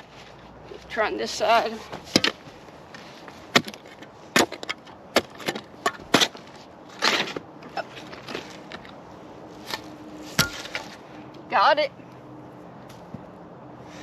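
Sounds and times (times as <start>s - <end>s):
digging tool striking rocky soil: 2.0s - 2.4s, 3.4s - 7.5s, 9.7s - 11.0s.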